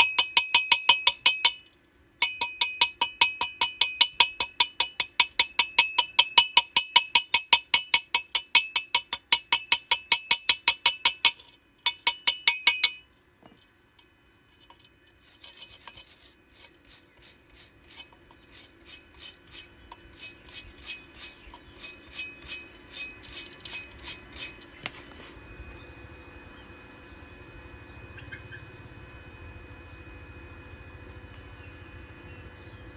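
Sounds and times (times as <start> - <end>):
metal strikes on steel pipe: 0.0 - 13.0, 15.2 - 24.7
light metal taps: 0.0 - 13.7, 14.6 - 25.1.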